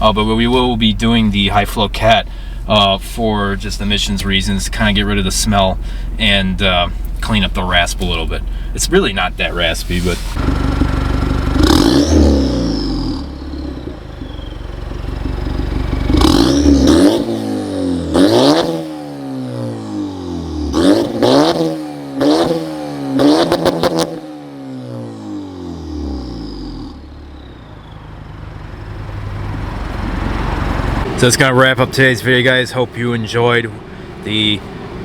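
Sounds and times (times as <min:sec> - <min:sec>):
exhaust pops: 0:00.0 - 0:18.9
car engine revving: 0:00.0 - 0:35.0
turbo whistles: 0:14.1 - 0:16.3.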